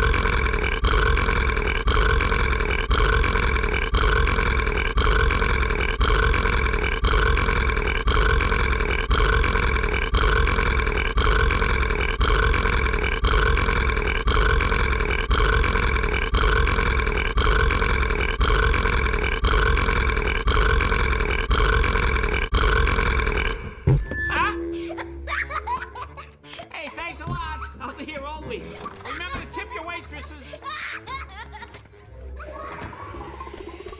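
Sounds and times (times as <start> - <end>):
looped cartoon burp: 0.0 - 26.3.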